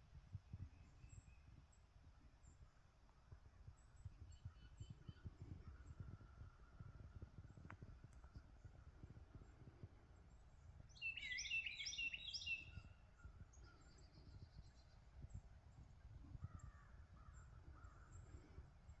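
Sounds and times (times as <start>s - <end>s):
quiet bird calls: 11.0s - 15.1s, 16.3s - 19.0s.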